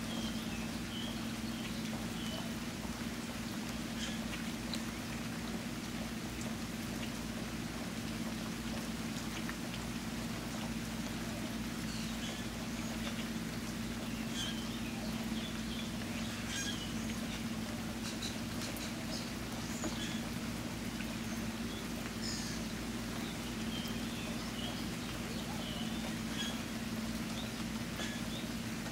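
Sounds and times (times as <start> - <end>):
rain falling: 0.0 - 28.9.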